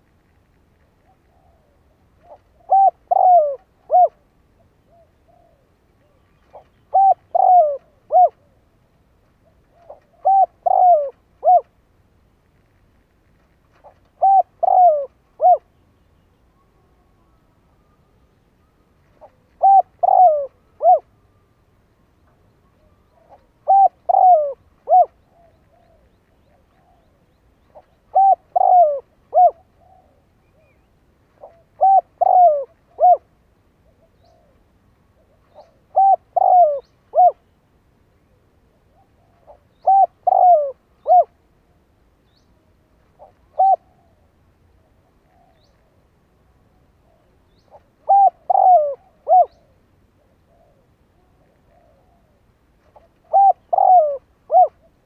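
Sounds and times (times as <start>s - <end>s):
dove cooing: 1.0s - 8.8s, 9.4s - 11.8s, 13.7s - 15.8s, 19.0s - 21.1s, 22.6s - 37.5s, 38.3s - 41.4s, 43.0s - 46.0s, 47.0s - 55.0s.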